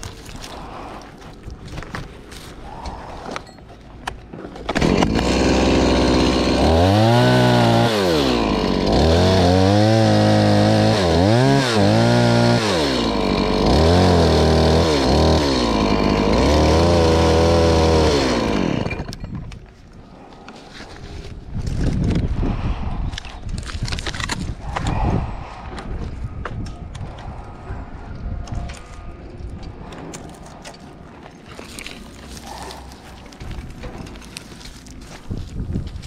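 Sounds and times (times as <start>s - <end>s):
chainsaw revving and cutting: 4.7s - 19.2s.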